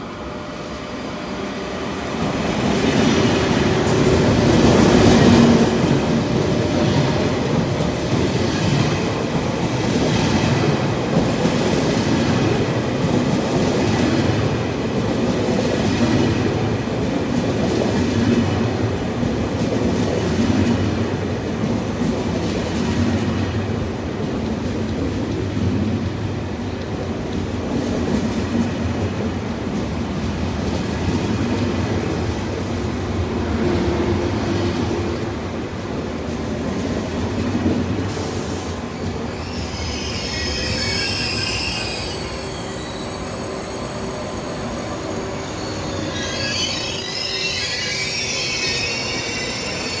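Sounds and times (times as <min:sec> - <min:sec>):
train rumbling on rails: 0:00.0 - 0:50.0
high wavering squealing: 0:39.2 - 0:50.0.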